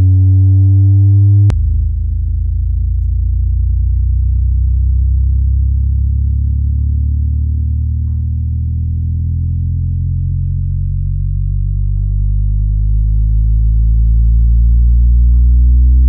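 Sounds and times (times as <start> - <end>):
bass-heavy music through speaker: 0.0 - 16.0.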